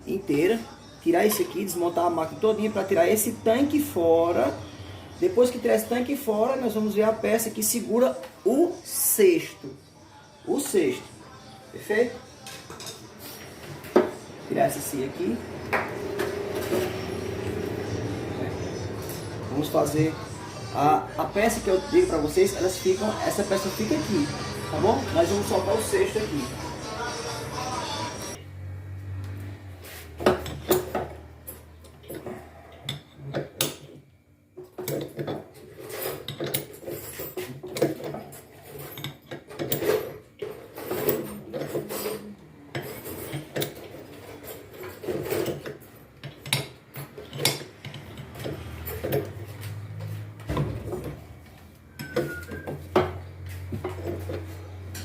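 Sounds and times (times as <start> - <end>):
tools and metal parts clanking: 30.2 - 34.0, 34.6 - 51.4, 52.0 - 55.0.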